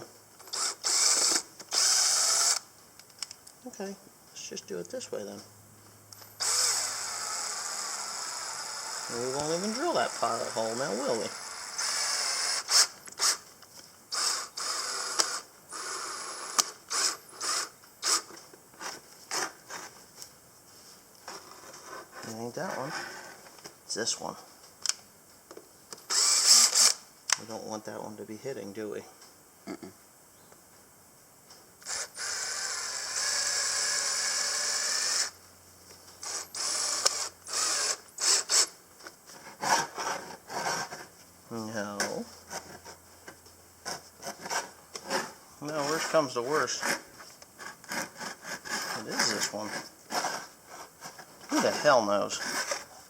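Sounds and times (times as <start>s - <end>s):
cordless drill whining: 0.5s - 2.7s, 6.2s - 13.4s, 14.1s - 18.3s, 26.1s - 27.0s, 31.8s - 35.4s, 36.2s - 38.8s, 51.5s - 52.9s.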